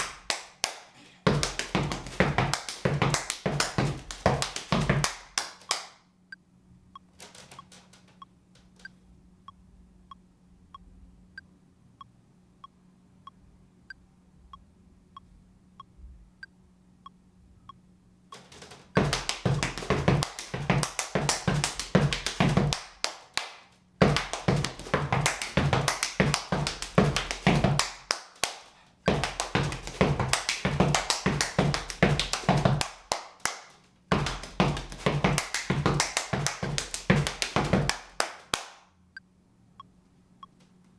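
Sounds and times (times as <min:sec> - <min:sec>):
steppers stomping and clapping: 0:00.0 - 0:05.9, 0:18.4 - 0:38.7.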